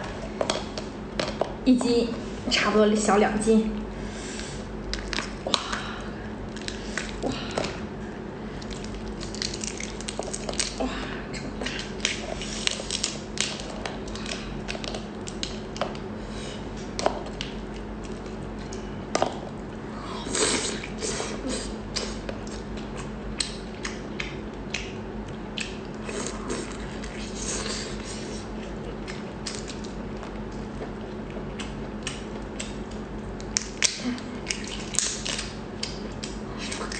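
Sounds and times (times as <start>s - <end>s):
steady low hum: 0.0s - 36.9s
prawn shell cracking and chewing: 4.7s - 7.2s, 8.5s - 10.8s, 11.4s - 16.1s, 16.7s - 19.8s, 21.9s - 36.9s.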